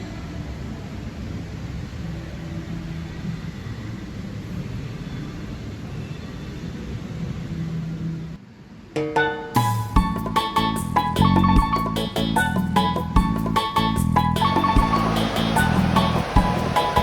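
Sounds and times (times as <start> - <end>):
steady low rumble: 14.4 - 17.0.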